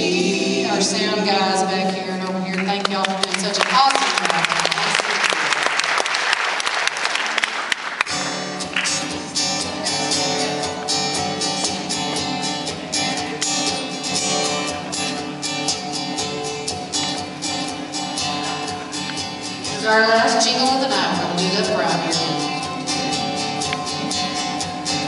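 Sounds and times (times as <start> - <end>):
audience applause: 2.6 - 9.1
strummed chords: 8.1 - 25.0.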